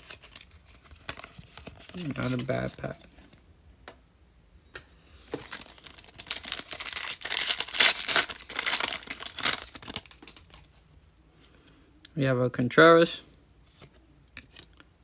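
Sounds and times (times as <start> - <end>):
wrapper tearing and crinkling: 0.0 - 2.7, 5.4 - 10.7.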